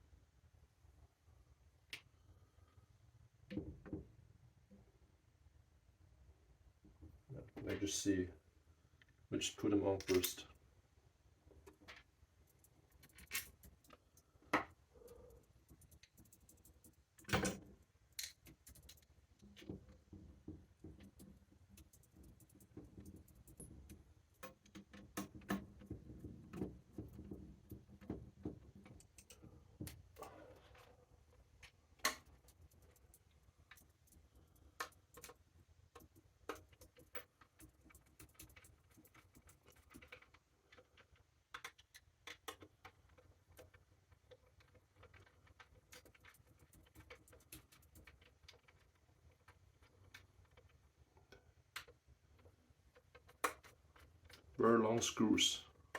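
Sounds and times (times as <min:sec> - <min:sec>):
plastic and metal parts clicking: 0:31.6 - 0:54.6.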